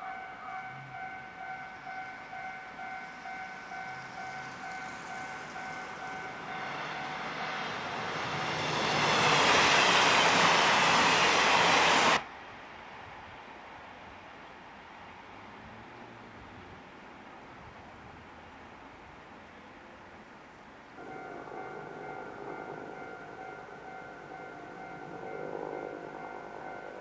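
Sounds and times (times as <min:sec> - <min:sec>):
level crossing warning bell: 0:00.0 - 0:10.8, 0:21.0 - 0:27.0
train passing: 0:00.0 - 0:17.3, 0:20.8 - 0:27.0.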